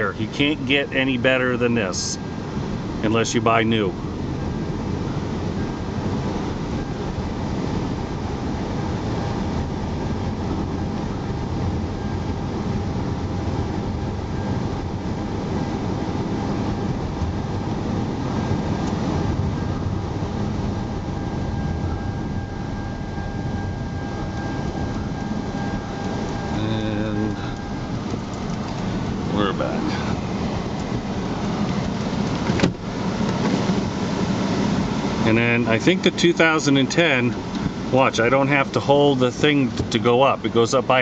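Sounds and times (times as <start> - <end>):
car cabin road and engine noise: 0.0 - 41.0.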